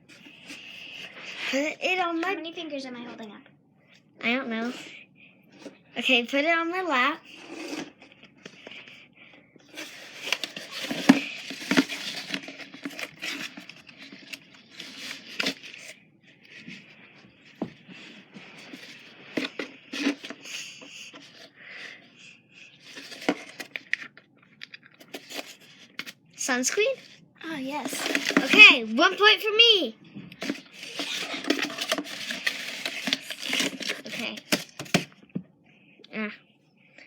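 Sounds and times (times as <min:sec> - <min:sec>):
hands rummaging in a box: 0:09.7 - 0:21.5, 0:22.8 - 0:24.2, 0:27.5 - 0:28.8, 0:30.4 - 0:35.1.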